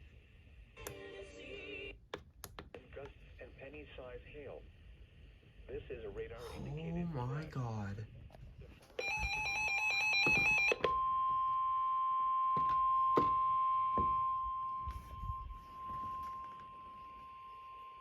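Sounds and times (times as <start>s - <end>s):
steady warning alarm tone: 9.0s - 18.0s.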